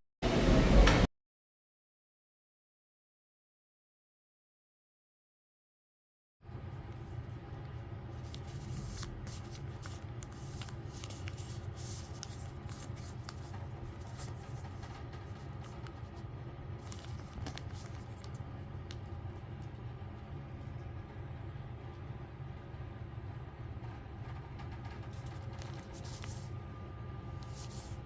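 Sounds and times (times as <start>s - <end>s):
steady low hum: 6.4s - 28.0s
packaging rustling and clicking: 8.2s - 16.2s, 16.8s - 19.1s, 24.8s - 26.5s.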